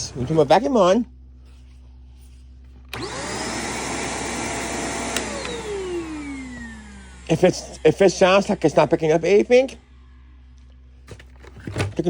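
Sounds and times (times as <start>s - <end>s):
vacuum cleaner motor running: 2.9s - 10.4s.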